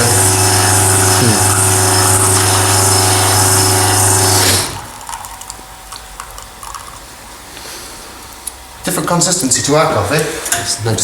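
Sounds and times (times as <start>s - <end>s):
water pump buzzing: 0.0s - 5.8s.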